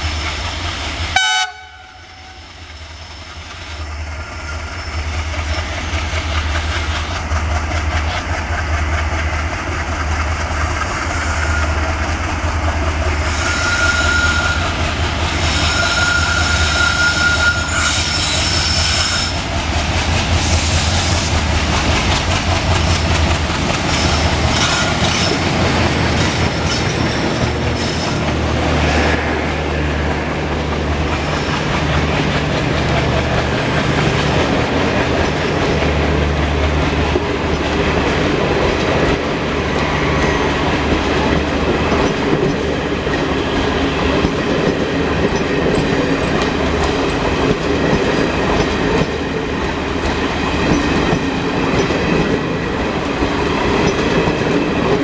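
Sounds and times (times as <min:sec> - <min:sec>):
train clickety-clack over rail joints: 0:00.0 - 0:55.0
high wheel squeals: 0:13.2 - 0:14.8, 0:15.4 - 0:19.4, 0:33.4 - 0:34.2.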